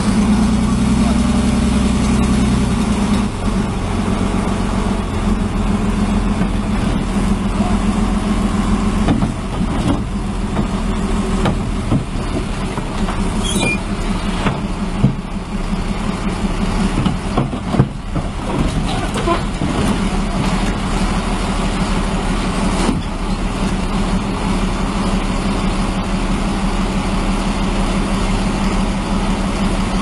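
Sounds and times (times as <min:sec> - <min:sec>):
diesel engine running: 0:00.0 - 0:30.0
metal knocks and clanks: 0:09.0 - 0:15.4, 0:16.8 - 0:20.7.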